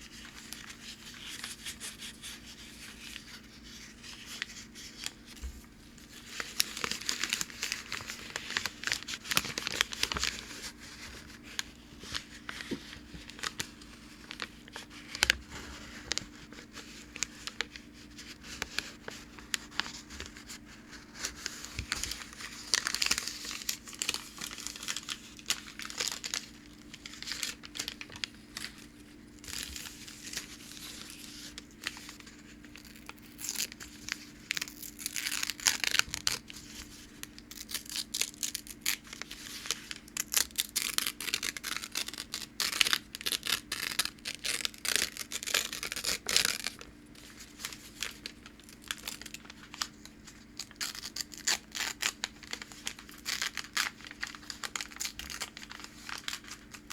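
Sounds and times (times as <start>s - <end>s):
packing paper tearing: 6.0s - 56.9s.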